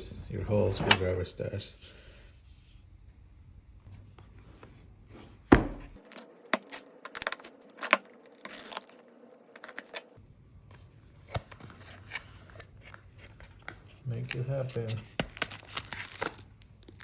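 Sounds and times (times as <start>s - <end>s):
loud knock on packaging: 5.5s - 5.9s
packaging tearing rustle: 6.0s - 10.2s, 14.2s - 17.0s.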